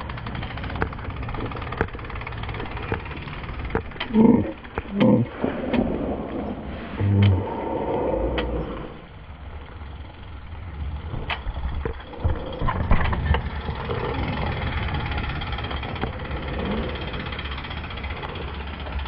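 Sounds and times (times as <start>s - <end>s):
bike rattling and knocking: 0.0s - 6.5s, 9.1s - 19.0s
tyres rolling on dirt: 0.0s - 19.0s
wind rumbling over microphone: 4.4s - 19.0s.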